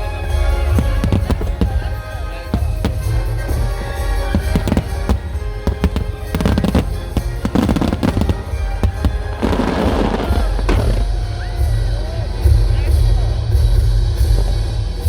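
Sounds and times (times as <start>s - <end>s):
fireworks bursting: 0.0s - 11.7s.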